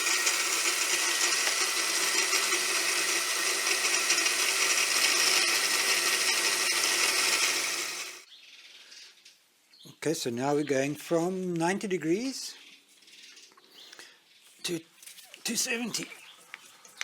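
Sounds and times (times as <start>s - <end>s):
machine motor noise: 0.0s - 8.2s
milling cutter cutting steel: 0.0s - 8.2s.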